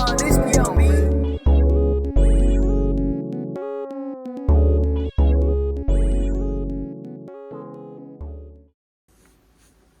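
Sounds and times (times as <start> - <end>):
keyboard music: 0.0 - 8.8
faint room hiss: 9.1 - 10.0.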